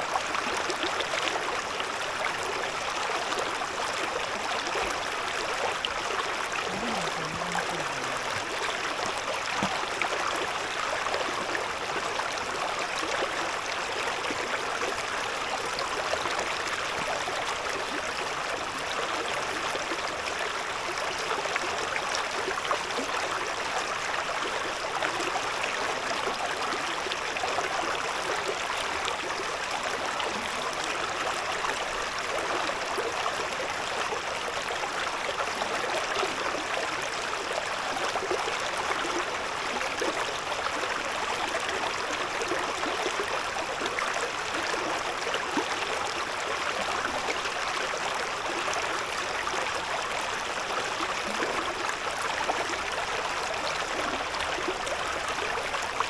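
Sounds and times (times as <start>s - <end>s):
river burbling over stones: 0.0s - 56.0s.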